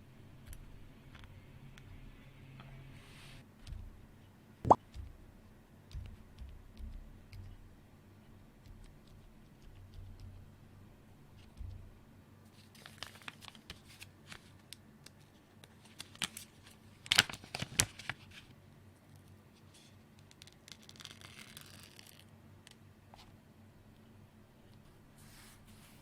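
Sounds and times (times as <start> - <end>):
crinkling rustle: 12.5 - 18.5.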